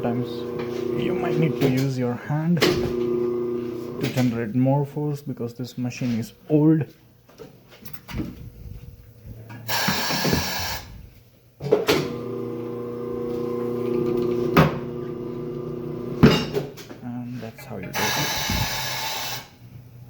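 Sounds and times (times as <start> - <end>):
turntable motor humming: 0.0 - 4.2, 12.1 - 16.2
air hiss: 9.7 - 11.2, 18.0 - 19.6.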